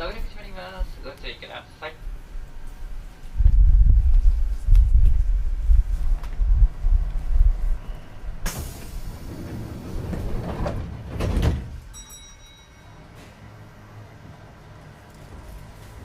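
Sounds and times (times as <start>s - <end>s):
train doors closing bang: 8.4s - 11.9s.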